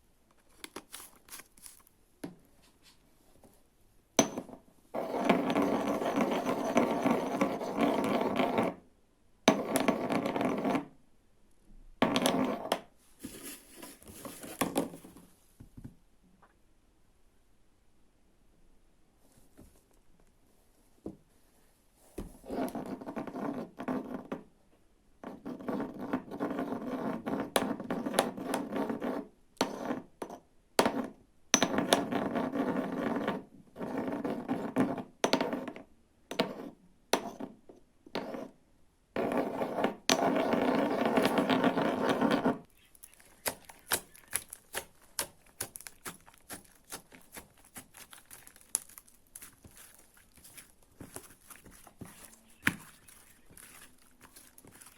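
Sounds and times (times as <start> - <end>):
slime scraping and stirring: 0.4 - 1.9, 5.0 - 8.8, 39.2 - 54.9.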